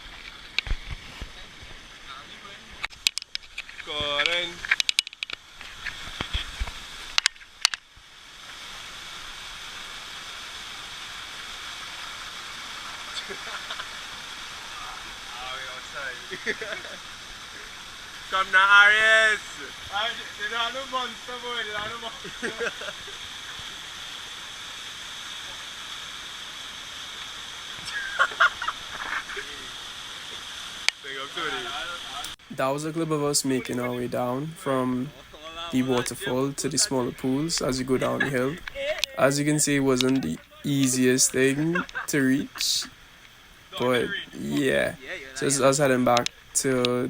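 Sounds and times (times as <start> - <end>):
thin high hiss: 0.0 - 47.0
waterfall rushing: 5.5 - 47.0
faint voices: 31.1 - 47.0
steady high hum: 31.4 - 47.0.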